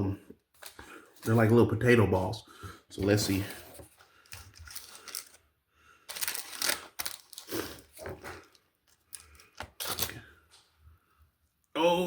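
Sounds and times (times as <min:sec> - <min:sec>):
food container handling: 0:03.0 - 0:05.4, 0:06.1 - 0:10.4.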